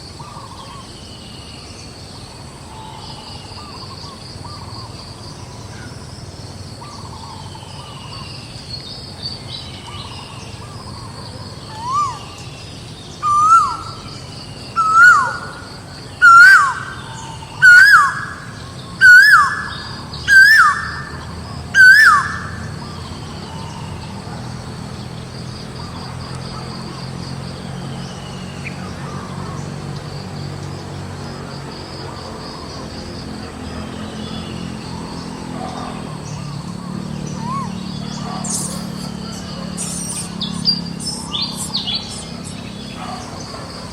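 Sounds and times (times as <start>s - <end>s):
high insect drone: 0.0s - 43.9s
bird calling sharp notes: 13.2s - 24.0s.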